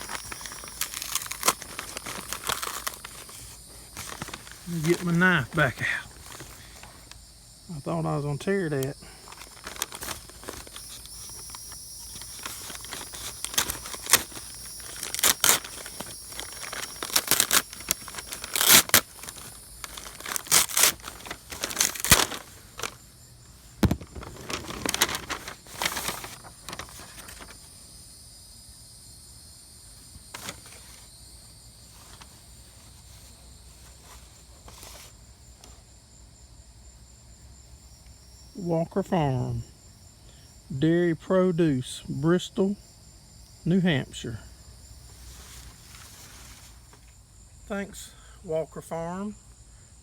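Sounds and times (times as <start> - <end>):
package tearing and crinkling: 0.0 - 7.1, 9.2 - 23.0, 23.8 - 27.6
crickets chirping: 0.0 - 50.0.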